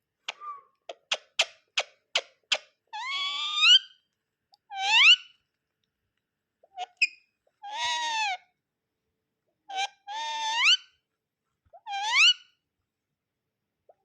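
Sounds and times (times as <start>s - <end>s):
parrot calling: 2.9s - 3.9s, 4.7s - 5.3s, 9.7s - 10.9s, 11.8s - 12.5s.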